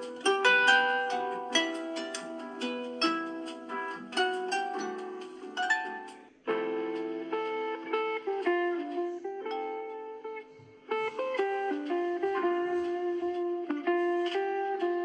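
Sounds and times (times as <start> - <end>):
phone ringtone plucked melody: 0.0 - 6.2.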